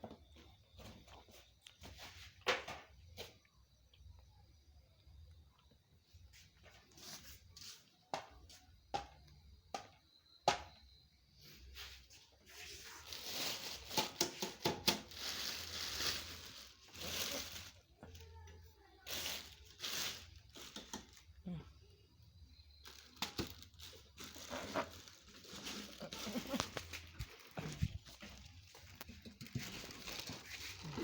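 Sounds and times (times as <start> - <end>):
packaging crinkling and tearing: 12.8 - 17.9, 22.8 - 31.0
packaging rustling: 12.9 - 17.8, 22.8 - 31.0.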